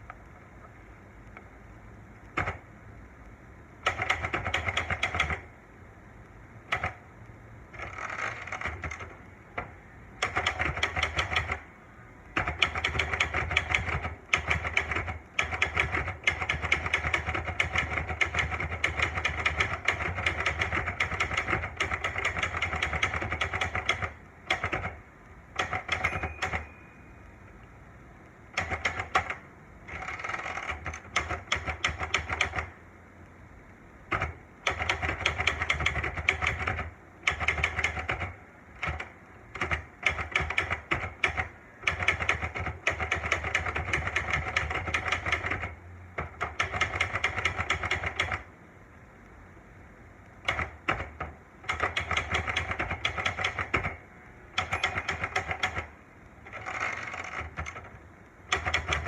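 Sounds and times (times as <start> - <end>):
typewriter keys clacking: 7.8 - 11.6, 12.4 - 25.0, 25.6 - 26.8, 34.1 - 48.4, 50.4 - 54.0, 54.6 - 55.9, 58.5 - 59.0.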